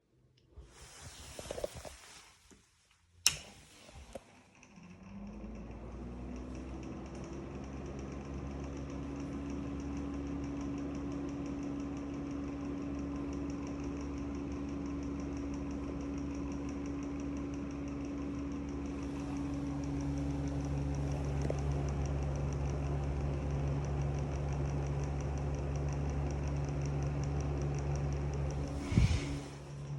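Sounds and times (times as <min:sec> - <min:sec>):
exhaust fan motor hum grinding: 0:03.3 - 0:29.9.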